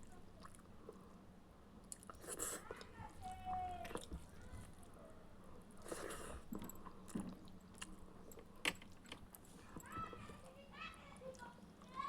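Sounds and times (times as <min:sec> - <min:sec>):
person chewing food: 0:01.8 - 0:02.9, 0:05.7 - 0:09.5.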